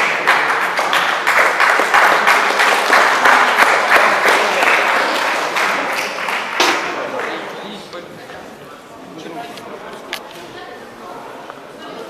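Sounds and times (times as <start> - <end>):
audience applauding: 0.0 - 7.9.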